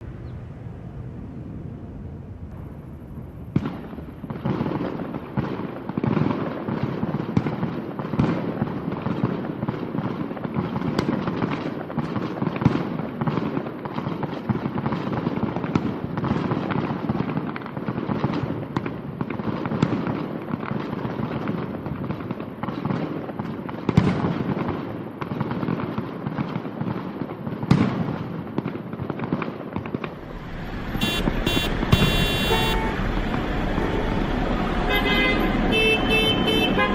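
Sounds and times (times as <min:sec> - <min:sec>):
low rumble: 0:00.0 - 0:04.6, 0:30.1 - 0:36.9
sharp bangs and crackles: 0:02.2 - 0:36.9.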